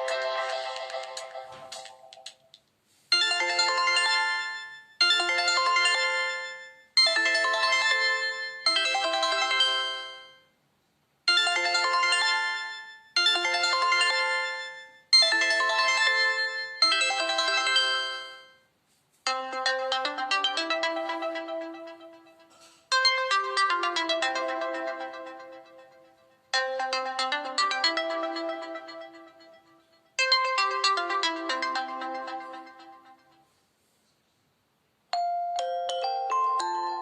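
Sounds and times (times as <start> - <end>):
phone ringtone melody: 0.0 - 2.4, 3.1 - 10.5, 11.3 - 18.7, 19.3 - 33.6, 35.2 - 37.0.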